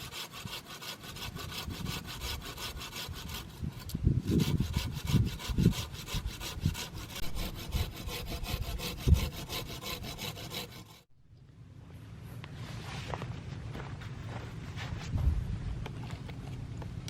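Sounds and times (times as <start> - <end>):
saw cutting wood: 0.0 - 11.1.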